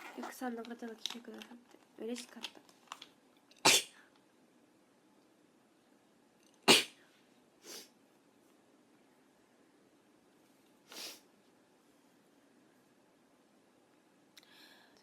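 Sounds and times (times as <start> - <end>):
woman sneezing: 3.7 - 4.0, 6.7 - 7.0.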